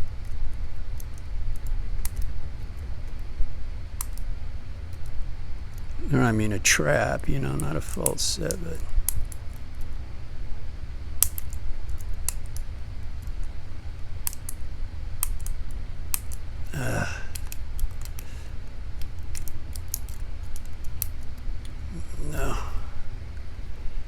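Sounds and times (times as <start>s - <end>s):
lock pick clicking in padlock: 11.2s - 12.6s
low hum: 12.6s - 24.0s
low vocal sound: 16.7s - 17.5s, 21.8s - 23.2s.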